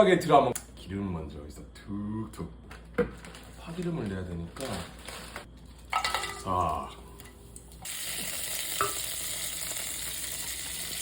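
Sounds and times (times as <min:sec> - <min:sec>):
green onions sizzling in hot oil: 0:07.8 - 0:11.0.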